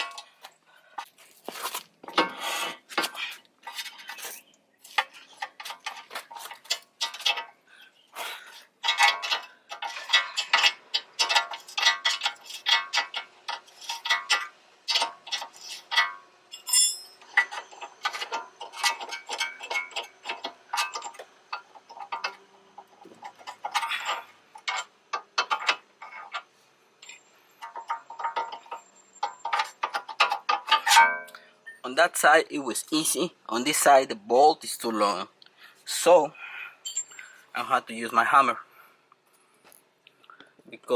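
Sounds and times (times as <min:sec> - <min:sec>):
metal tools clinking: 0:08.8 - 0:22.4, 0:23.2 - 0:31.4, 0:36.8 - 0:37.4.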